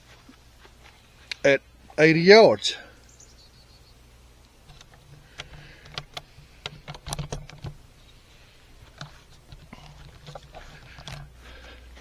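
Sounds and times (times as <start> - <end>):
camera handling clicks and knocks: 4.6 - 7.8.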